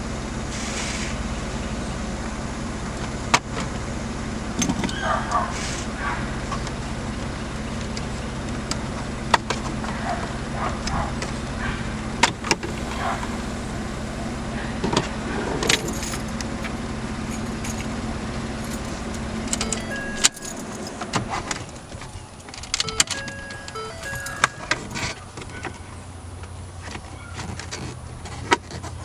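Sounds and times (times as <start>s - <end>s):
steady low hum: 9.9s - 26.8s
short electronic beeps: 19.6s - 21.0s, 22.8s - 25.2s.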